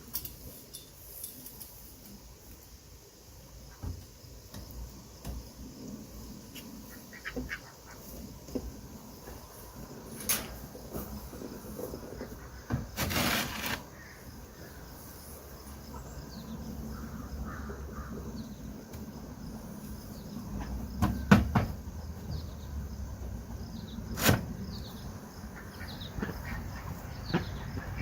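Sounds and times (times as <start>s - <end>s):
scraping rustle: 12.8s - 13.9s.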